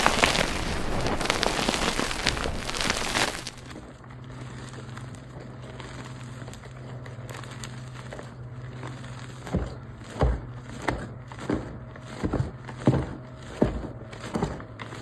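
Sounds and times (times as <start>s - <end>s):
steady low hum: 0.0s - 8.8s
faint scattered crackles: 0.0s - 10.1s.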